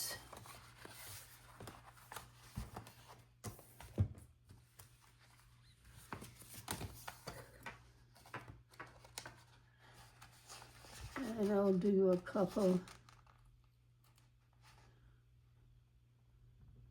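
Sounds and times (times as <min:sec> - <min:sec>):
paper sticker sheets rustling: 0:08.2 - 0:13.5.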